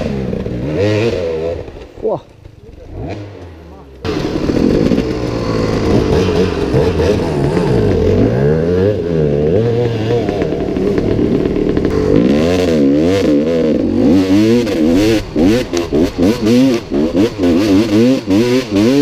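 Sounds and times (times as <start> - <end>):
motorcycle engine revving: 0.0 - 19.0.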